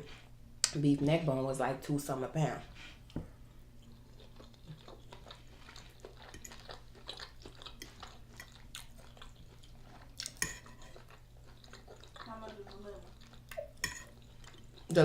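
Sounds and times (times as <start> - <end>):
chewing soft food: 3.5 - 15.0.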